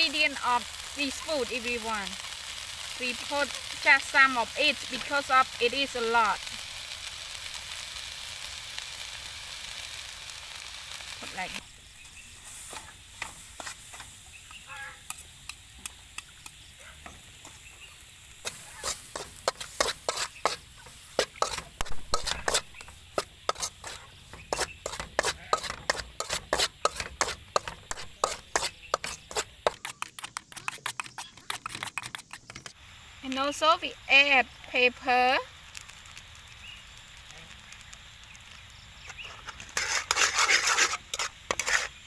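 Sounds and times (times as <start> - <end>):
faint oil sizzling: 0.0 - 30.1, 32.7 - 42.0
spatula scraping and knocking pan: 18.4 - 32.7, 39.1 - 42.0.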